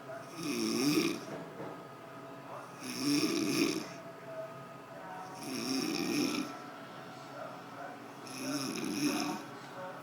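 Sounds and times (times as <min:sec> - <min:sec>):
person snoring: 0:00.3 - 0:01.3, 0:02.8 - 0:04.0, 0:05.4 - 0:06.6, 0:08.2 - 0:09.4.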